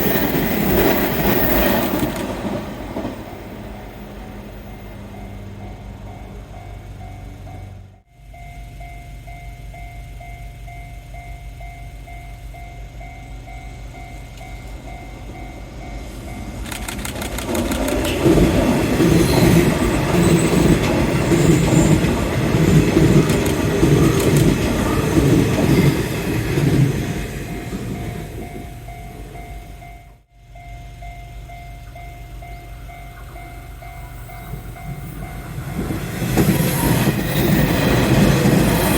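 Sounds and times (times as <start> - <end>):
train wheels clacking over rail joints: 16.5 - 28.6, 34.6 - 38.9
level-crossing bell ringing: 18.8 - 38.9.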